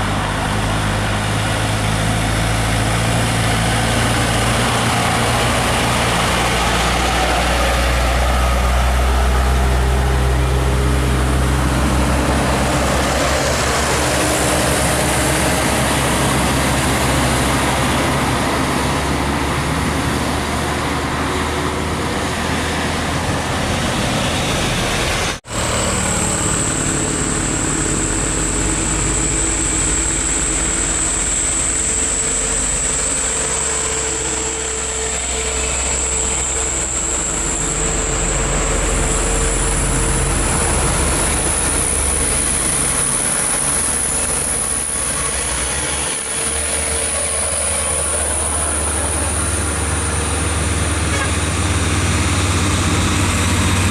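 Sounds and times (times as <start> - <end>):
truck engine rumbling under load: 0.0 - 53.9
high whine: 20.8 - 53.9.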